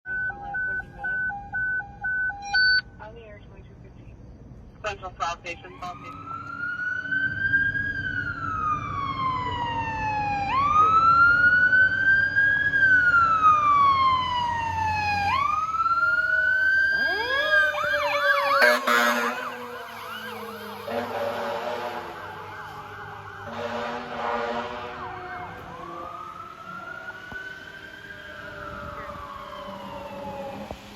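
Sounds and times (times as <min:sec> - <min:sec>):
fire engine siren: 0:00.1 - 0:02.8, 0:05.6 - 0:30.9
air horn blasts: 0:18.6 - 0:19.9, 0:20.8 - 0:22.4, 0:23.4 - 0:25.2.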